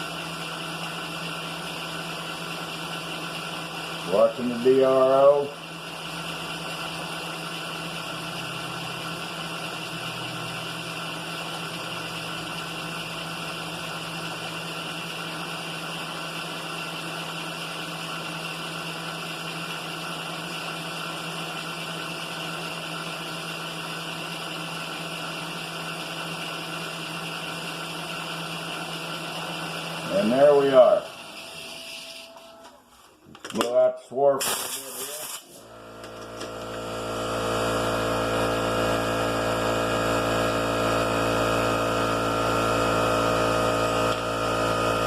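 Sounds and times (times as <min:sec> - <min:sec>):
milling machine spindle hum: 0:35.6 - 0:45.0.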